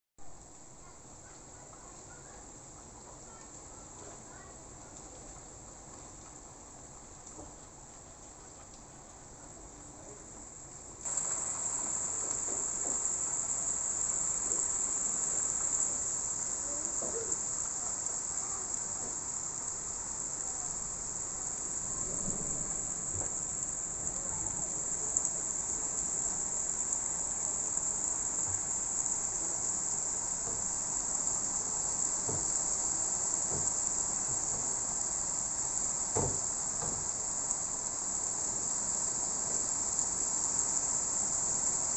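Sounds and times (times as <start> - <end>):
heavy rain: 9.2 - 41.9
insects chirring: 10.3 - 41.9.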